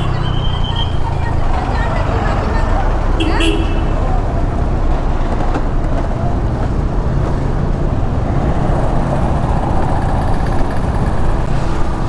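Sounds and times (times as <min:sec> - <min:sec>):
wind buffeting microphone: 0:03.9 - 0:12.0.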